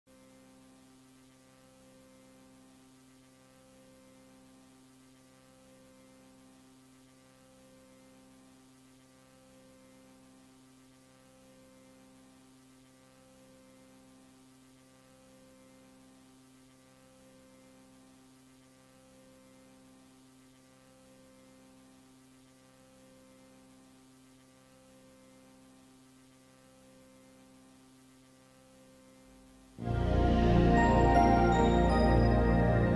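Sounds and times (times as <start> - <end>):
pulsing low tone: 29.8 - 32.9.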